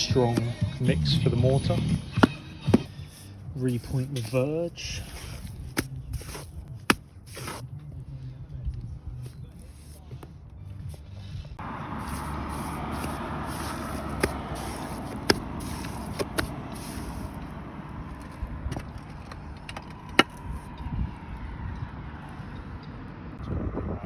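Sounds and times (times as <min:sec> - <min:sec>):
trowel scraping mortar: 0:00.0 - 0:00.6, 0:02.2 - 0:07.6, 0:12.0 - 0:17.5.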